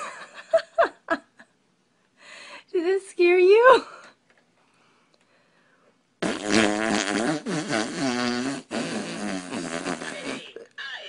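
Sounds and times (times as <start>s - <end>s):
long buzzy fart: 6.2s - 10.7s.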